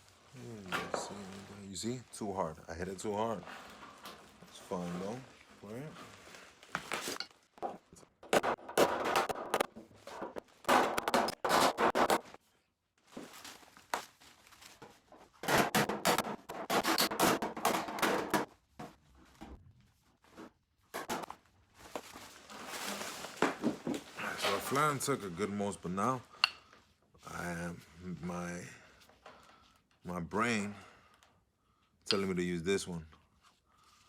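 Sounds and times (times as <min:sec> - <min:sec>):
hammer tapping sheet metal: 0:08.2 - 0:12.3, 0:15.4 - 0:18.5.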